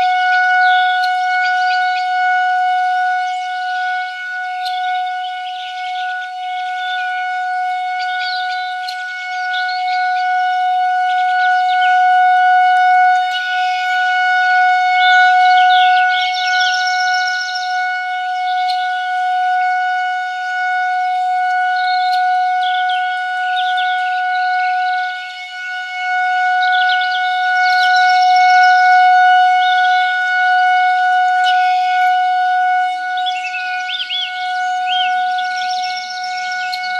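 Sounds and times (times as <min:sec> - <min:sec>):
birds chirping: 0:00.0 - 0:19.6, 0:20.2 - 0:36.9
siren steady single tone: 0:00.0 - 0:36.9
bird-like chirps: 0:15.0 - 0:17.8, 0:26.6 - 0:30.0, 0:33.2 - 0:36.9.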